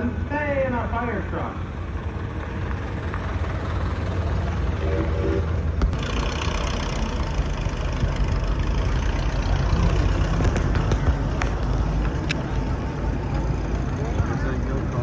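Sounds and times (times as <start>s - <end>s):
car engines idling: 0.0s - 15.0s
brief pitched tone: 4.5s - 5.6s.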